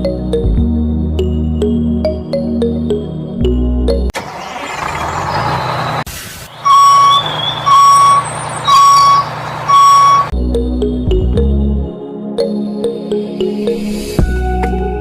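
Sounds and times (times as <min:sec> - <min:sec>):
background music: 0:00.0 - 0:04.1, 0:10.3 - 0:15.0
truck engine: 0:04.0 - 0:10.3
truck reversing alarm beeping: 0:04.5 - 0:10.3.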